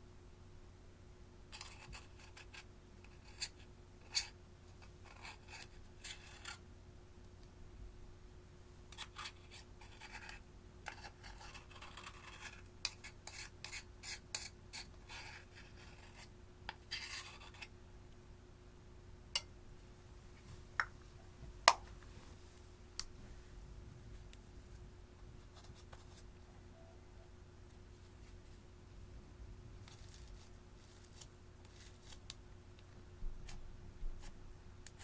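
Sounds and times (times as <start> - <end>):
faint steady hum: 0.0 - 35.0
scraping on hard surface: 1.6 - 6.6, 9.0 - 17.7.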